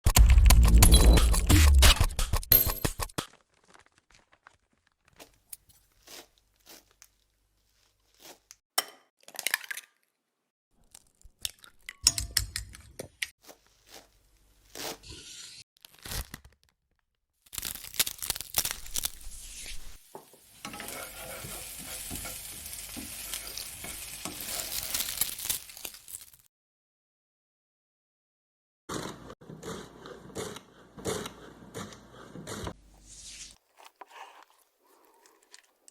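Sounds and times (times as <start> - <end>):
food sizzling in a frying pan: 19.2 - 26.4.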